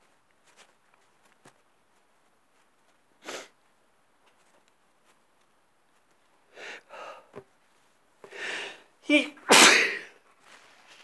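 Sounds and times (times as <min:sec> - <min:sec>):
man sharp breath: 0:06.5 - 0:07.4, 0:08.3 - 0:08.9.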